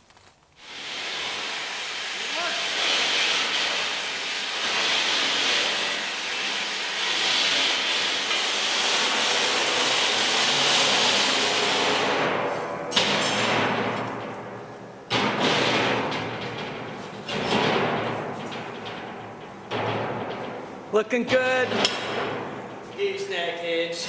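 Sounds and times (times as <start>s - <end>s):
air hissing: 0.6s - 12.2s.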